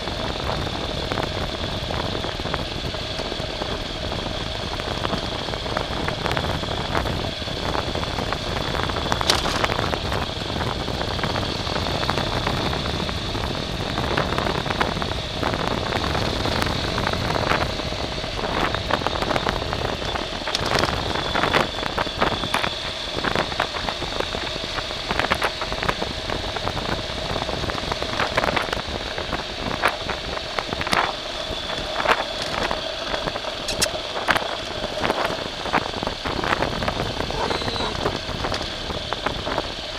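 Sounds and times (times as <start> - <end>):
high whine: 0.0 - 39.9
vehicle driving over rough ground: 0.0 - 39.9
knocks and crackles: 9.1 - 9.9.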